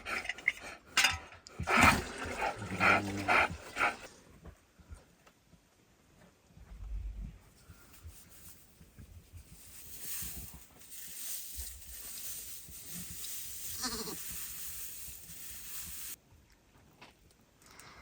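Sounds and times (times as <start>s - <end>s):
background hiss: 2.4s - 16.4s
sheep or goat bleat: 13.8s - 14.2s.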